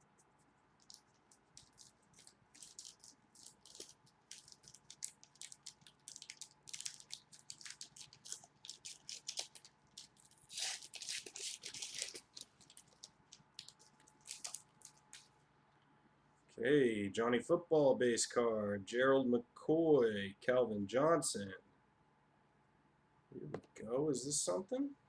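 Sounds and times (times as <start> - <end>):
trading cards rustling: 0.4 - 15.3.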